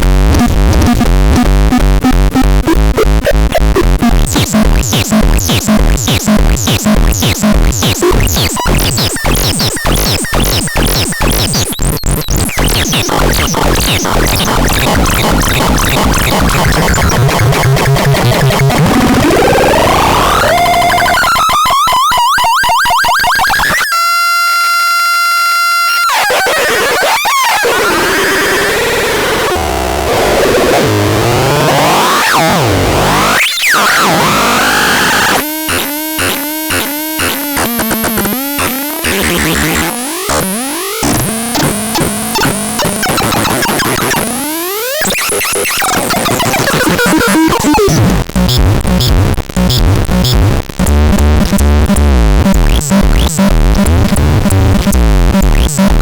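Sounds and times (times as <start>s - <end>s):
synthesizer noisy gliding tones: 4.1s - 23.9s, 28.0s - 56.0s
synthesizer pitched sweeps: 29.1s - 35.5s
sharp percussive clicks: 46.3s - 56.0s.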